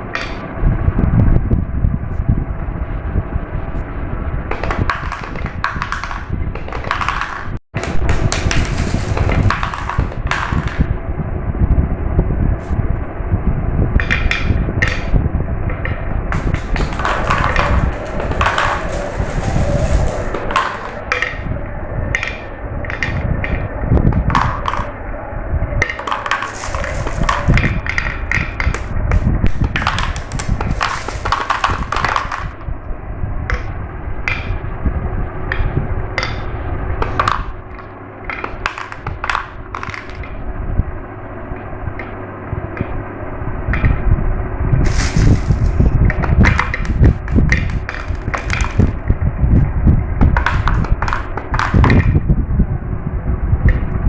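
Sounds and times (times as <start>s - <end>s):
marbles rolling on a track: 4.5s - 11.0s, 16.3s - 21.4s, 25.8s - 32.6s, 38.3s - 40.3s, 44.8s - 49.1s, 50.2s - 52.2s
marbles clicking and clacking: 16.3s - 21.5s, 25.8s - 32.6s, 44.8s - 49.0s, 50.2s - 52.2s.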